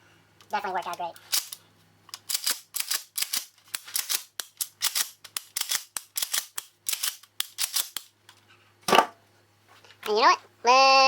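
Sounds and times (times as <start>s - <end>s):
shotgun slide clacking: 2.2s - 8.1s.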